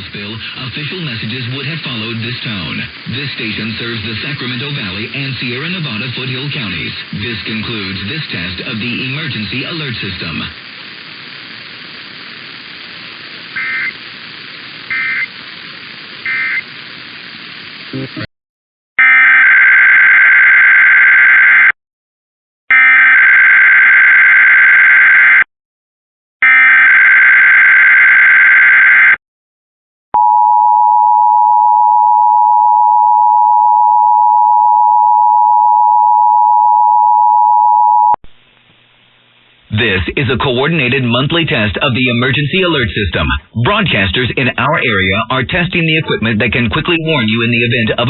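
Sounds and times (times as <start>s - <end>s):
data bursts: 0.0s - 18.3s
radio hiss: 0.0s - 18.3s, 38.3s - 48.0s.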